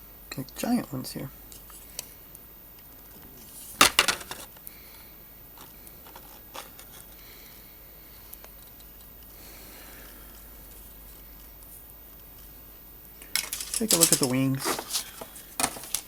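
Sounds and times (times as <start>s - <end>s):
plastic parts clicking and rustling: 3.8s - 4.6s, 5.6s - 7.1s, 13.2s - 16.0s.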